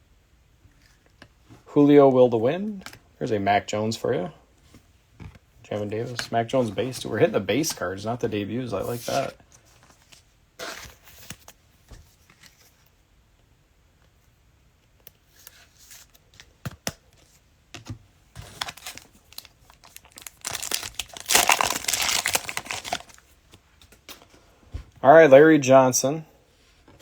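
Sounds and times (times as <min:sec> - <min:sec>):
plastic wrapper crinkling and tearing: 0:18.4 - 0:23.4.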